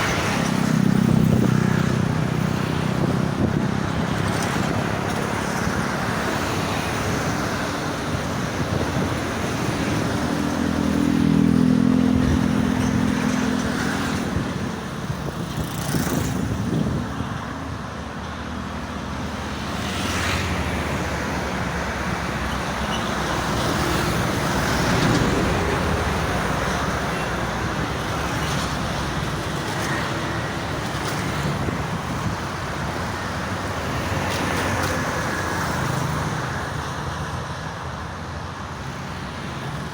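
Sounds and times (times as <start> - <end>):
highway traffic: 0.0 - 39.9
heavy vehicle engine passing: 19.3 - 32.4.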